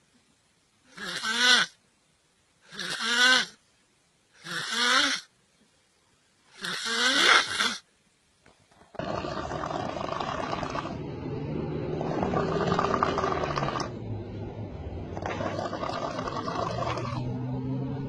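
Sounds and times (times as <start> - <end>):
person snoring: 9.0 - 13.9.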